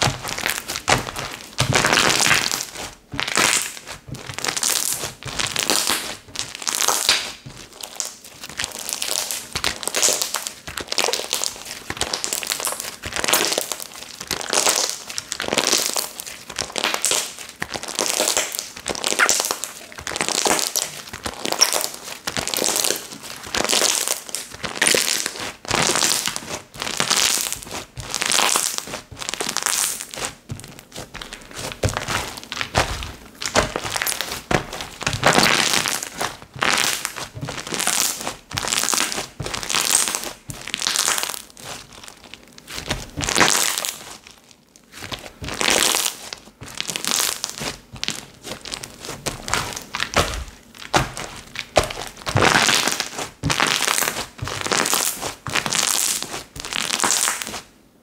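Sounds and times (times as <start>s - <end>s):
slime crackling and clicking: 0.0s - 44.3s.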